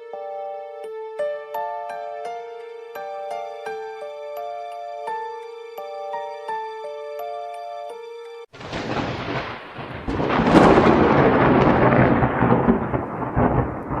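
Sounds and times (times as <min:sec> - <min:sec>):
melodic music with held notes: 0:00.0 - 0:08.5
rain: 0:08.5 - 0:14.0
rolling thunder: 0:08.6 - 0:14.0.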